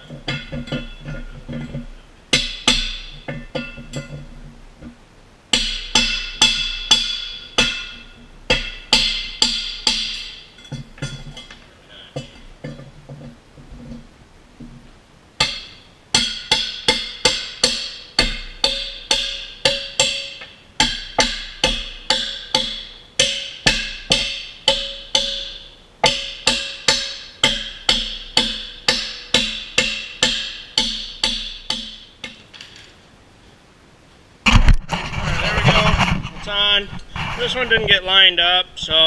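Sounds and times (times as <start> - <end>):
hammer striking steel: 0.1 - 4.2, 5.5 - 11.6, 15.4 - 32.5.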